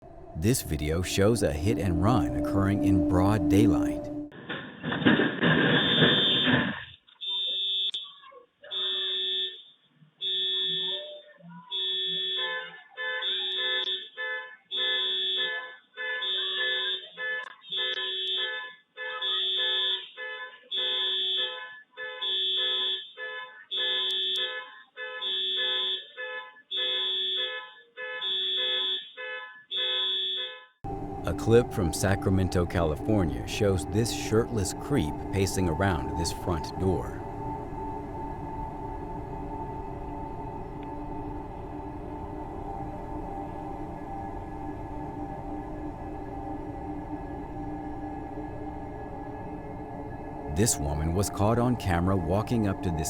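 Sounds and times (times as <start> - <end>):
electronic tone pattern: 0.4 - 4.4, 30.9 - 53.0
loud crash: 4.4 - 6.8
car alarm: 5.3 - 53.0.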